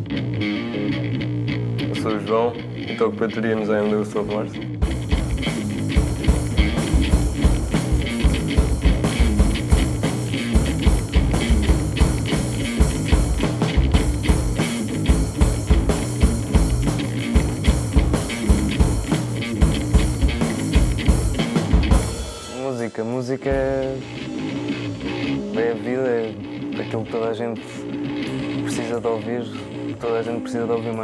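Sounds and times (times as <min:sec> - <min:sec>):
rock band playing: 0:03.8 - 0:29.0
drum kit beating: 0:04.8 - 0:25.5.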